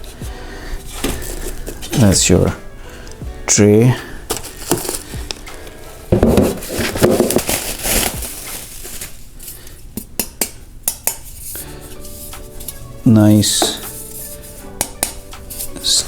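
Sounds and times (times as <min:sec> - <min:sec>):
fryer basket clattering: 0:04.2 - 0:09.2.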